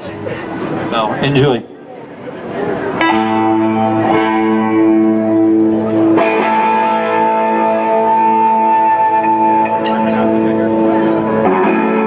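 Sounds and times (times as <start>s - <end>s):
guitar ringing chords: 3.0s - 12.0s.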